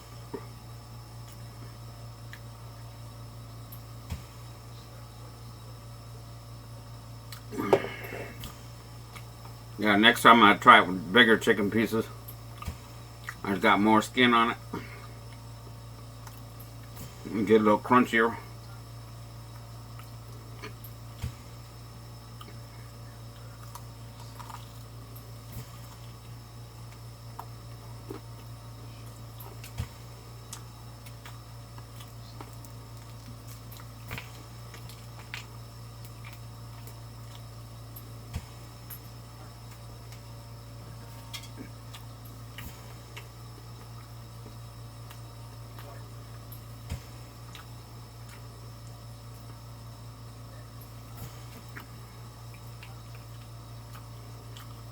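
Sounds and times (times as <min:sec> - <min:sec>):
steady low hum: 0:00.0 - 0:54.9
person chewing food: 0:07.2 - 0:09.6, 0:12.4 - 0:13.4, 0:14.9 - 0:17.0, 0:19.0 - 0:40.3, 0:41.0 - 0:49.7, 0:51.5 - 0:54.9
crunching fried chicken: 0:19.4 - 0:40.4.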